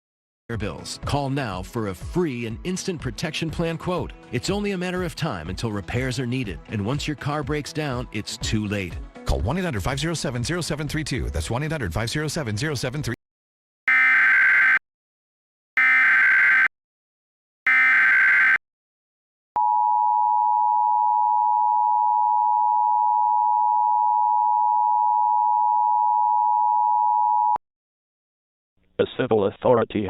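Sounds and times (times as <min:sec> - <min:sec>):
harsh digital data bursts: 0:15.8 - 0:16.7, 0:17.7 - 0:18.6
two-tone alert signal: 0:15.8 - 0:16.7, 0:17.7 - 0:18.6.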